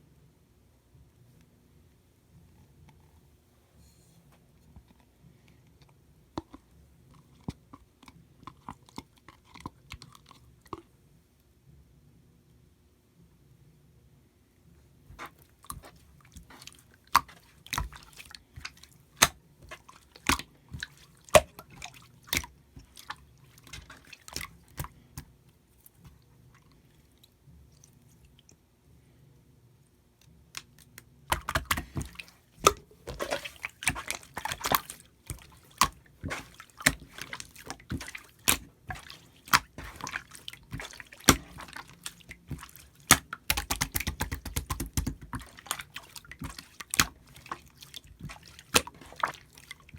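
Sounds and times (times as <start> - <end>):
slime wet squelches: 15.0 - 28.7, 30.2 - 49.9.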